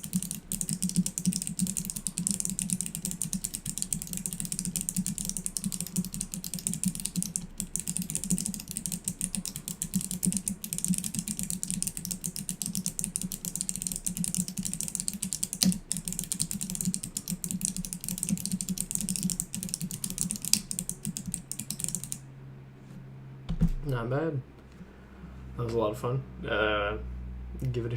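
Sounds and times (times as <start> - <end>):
mechanical keyboard typing: 0.0 - 22.2.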